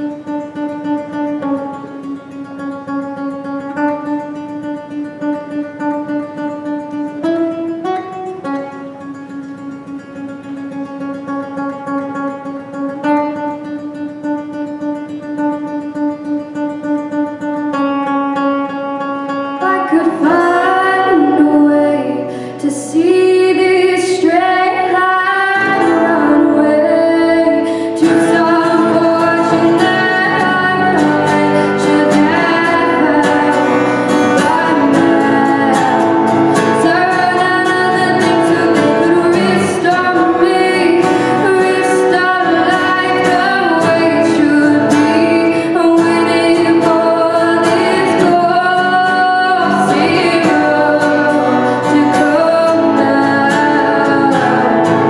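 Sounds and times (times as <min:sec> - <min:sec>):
strummed guitar: 0:00.0 - 0:55.0
person singing: 0:19.4 - 0:55.0.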